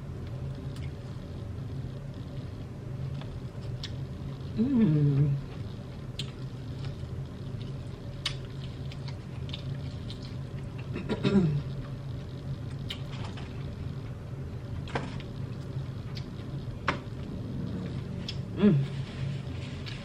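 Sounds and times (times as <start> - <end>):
chewing and wet mouth sounds: 3.1 - 4.4, 5.4 - 11.0, 11.7 - 14.1, 15.5 - 16.6, 17.2 - 18.6
person humming mm: 4.6 - 5.4, 18.5 - 19.0.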